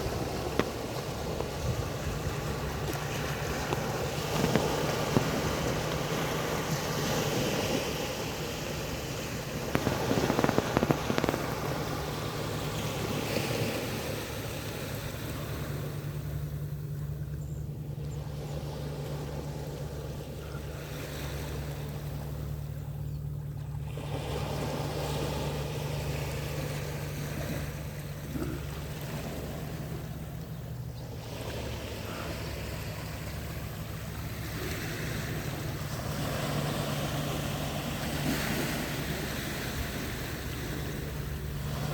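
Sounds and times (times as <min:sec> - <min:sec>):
sea waves washing in: 0:00.0 - 0:41.9
steady low hum: 0:00.0 - 0:41.9
brief crackles: 0:09.7 - 0:11.6.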